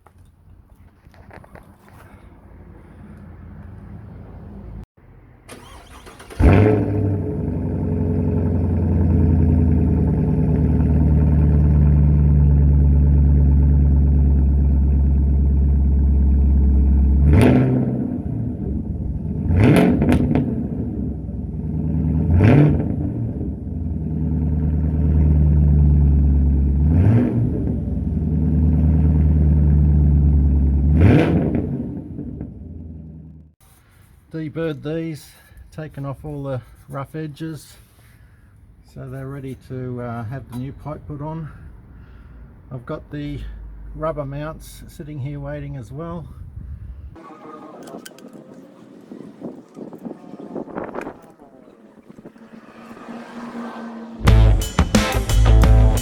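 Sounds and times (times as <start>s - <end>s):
car engine starting and revving: 1.8s - 33.6s, 47.1s - 56.0s
engine idling with deep burble: 7.0s - 17.4s.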